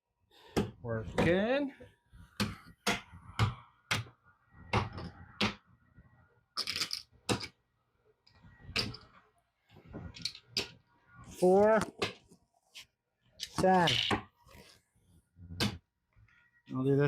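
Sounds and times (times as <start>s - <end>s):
casino chips clacking: 6.6s - 7.5s.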